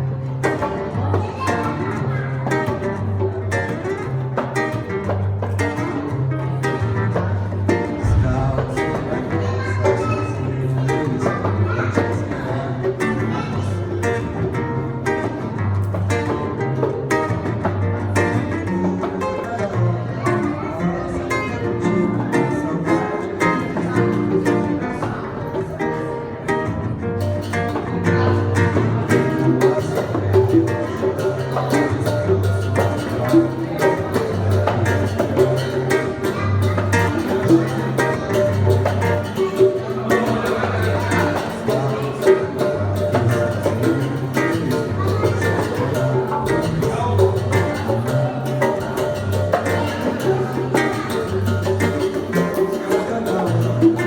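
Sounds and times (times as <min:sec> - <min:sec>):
acoustic guitar strumming: 0:00.0 - 0:54.0.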